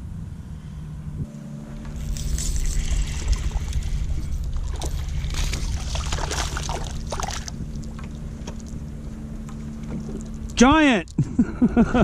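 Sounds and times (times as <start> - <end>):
wind rumble on microphone: 0.0 - 12.0
water splashing against kayak: 2.0 - 11.0.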